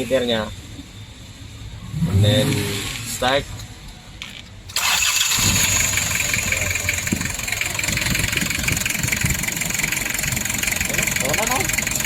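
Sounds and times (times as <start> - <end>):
diesel engine idling: 4.7 - 12.0.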